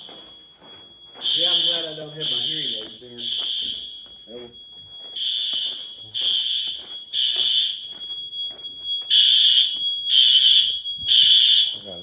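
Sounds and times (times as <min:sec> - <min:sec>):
faint steady high tone: 0:00.0 - 0:09.1
fire alarm horn blasts: 0:00.0 - 0:12.0.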